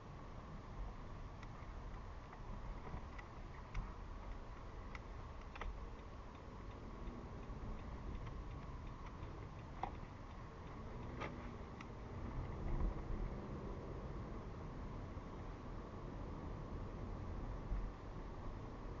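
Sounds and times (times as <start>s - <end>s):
road and engine rumble in car: 0.0s - 19.0s
light clicks and ticks: 1.3s - 13.0s.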